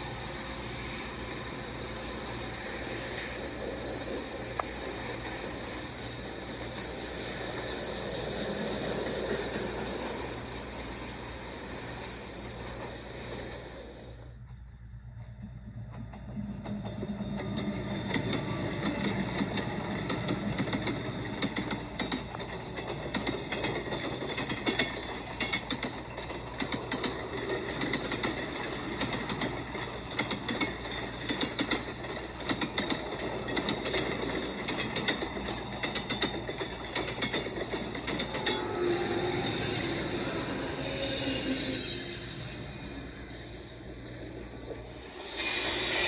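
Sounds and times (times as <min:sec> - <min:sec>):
train wheels rattling on rails: 0:00.0 - 0:46.0
metal wheel squeal: 0:37.7 - 0:46.0.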